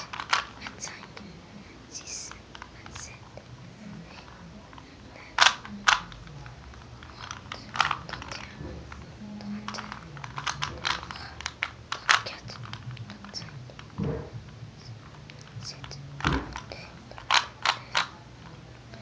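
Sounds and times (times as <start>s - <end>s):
plastic cube twisting clicks: 0.0s - 1.1s, 5.4s - 8.6s, 9.6s - 14.0s, 15.2s - 18.2s.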